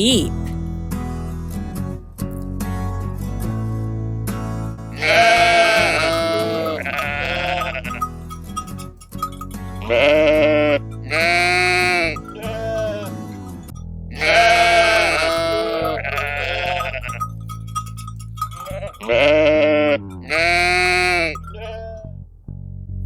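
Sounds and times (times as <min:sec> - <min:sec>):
sheep bleating: 0:04.9 - 0:13.2, 0:14.2 - 0:22.0.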